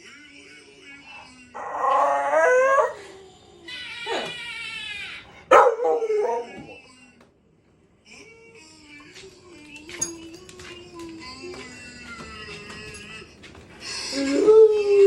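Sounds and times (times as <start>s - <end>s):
dog howling and whining: 1.5s - 3.3s, 5.2s - 6.9s, 14.1s - 15.0s.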